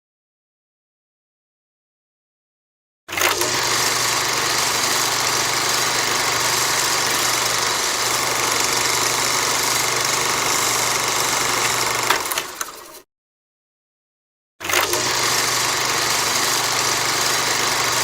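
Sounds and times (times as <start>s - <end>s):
projector whirring: 3.4s - 12.8s, 15.0s - 18.0s
projector click: 11.4s - 12.8s.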